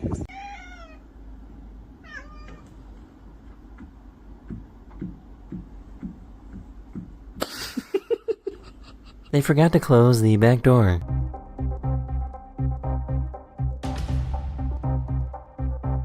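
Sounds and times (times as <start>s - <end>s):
faint tapping: 2.5s - 7.4s.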